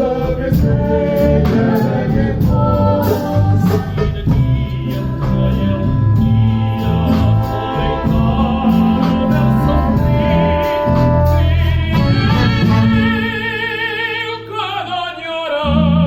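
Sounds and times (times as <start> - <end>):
wind band of reeds and brass: 1.6 - 13.4.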